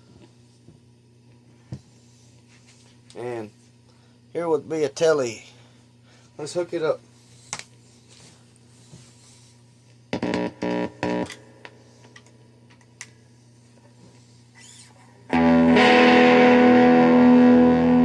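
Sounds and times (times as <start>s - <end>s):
amp hum: 0.0s - 18.0s
electric guitar chord ringing: 10.2s - 11.8s, 15.3s - 18.0s
plucked electric guitar notes: 15.3s - 18.0s.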